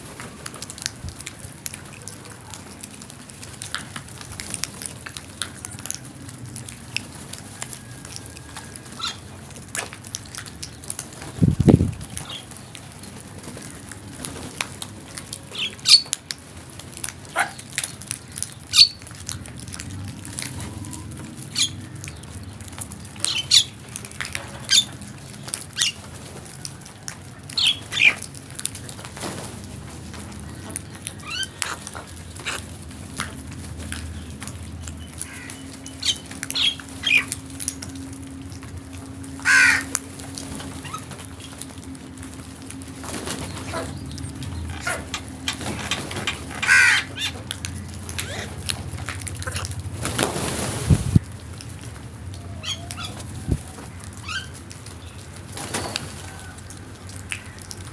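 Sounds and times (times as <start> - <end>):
crows cawing: 35.2 - 35.7, 39.4 - 40.0, 46.2 - 47.4, 57.3 - 57.8.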